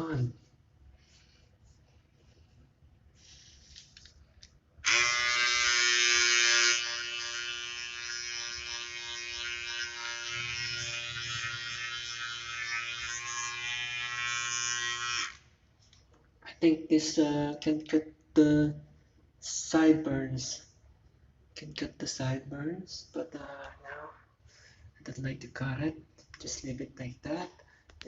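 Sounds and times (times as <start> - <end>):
electric trimmer buzzing: 4.8 - 15.4.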